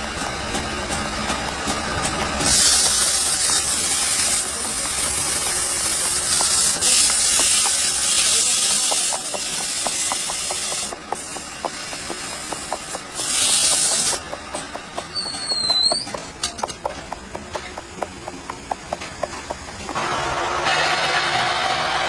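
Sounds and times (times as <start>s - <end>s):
loud air hiss: 2.4s - 14.2s.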